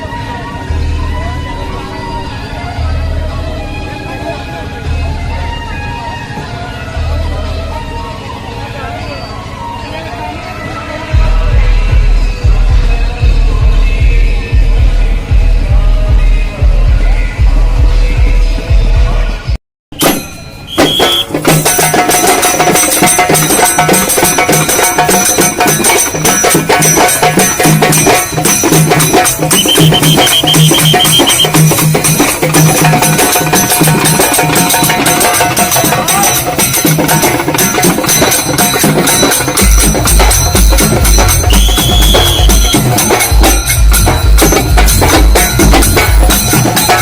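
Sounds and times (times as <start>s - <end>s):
frame drums beaten with sticks: 20.0s - 47.0s.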